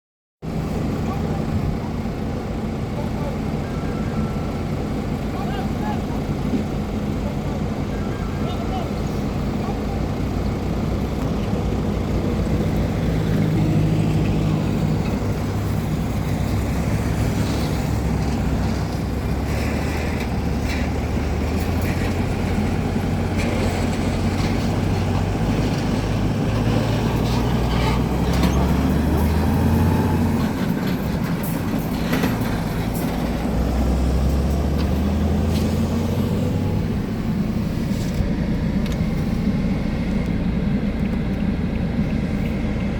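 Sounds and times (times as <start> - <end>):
truck diesel engine under load: 0.4 - 42.9.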